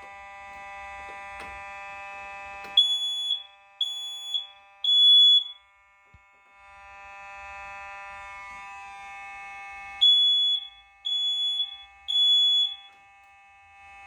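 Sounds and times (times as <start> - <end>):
electrical hum: 0.0 - 6.0, 8.1 - 13.0
smoke alarm beeps: 2.6 - 5.6, 10.0 - 13.0.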